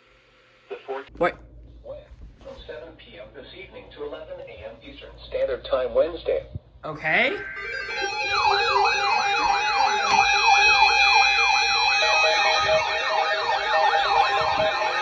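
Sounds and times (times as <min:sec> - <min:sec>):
steady held tones: 0:07.0 - 0:15.0
siren yelping: 0:07.1 - 0:15.0.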